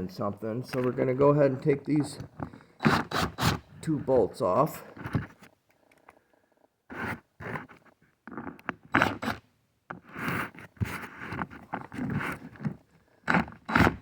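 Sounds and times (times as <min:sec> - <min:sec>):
hand tool scraping bolts: 0:02.0 - 0:04.1, 0:11.7 - 0:14.0.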